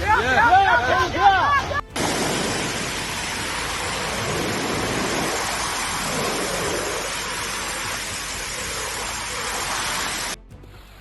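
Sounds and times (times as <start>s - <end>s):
rushing water: 1.6s - 11.0s.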